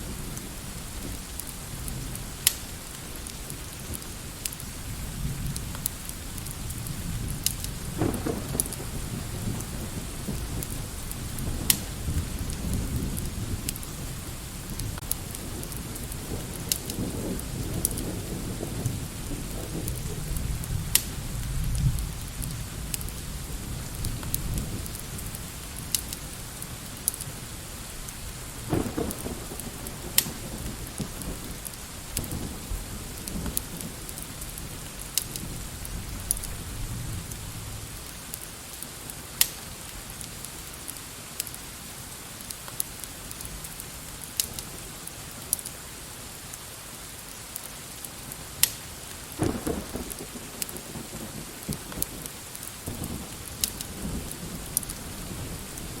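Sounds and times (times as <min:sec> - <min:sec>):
fireplace crackling: 0:00.0 - 0:17.0, 0:37.3 - 0:50.9
rain hiss: 0:00.0 - 0:56.0.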